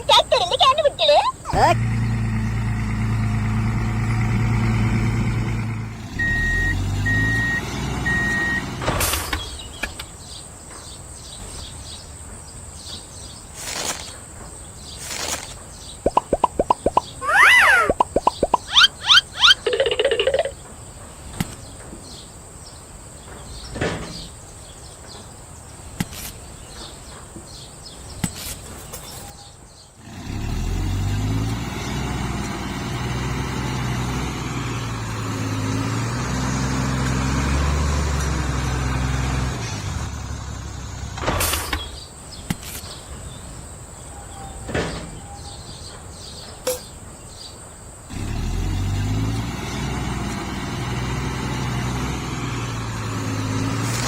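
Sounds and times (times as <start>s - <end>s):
engine running low: 1.4s - 10.1s, 30.0s - 41.4s, 48.1s - 54.0s.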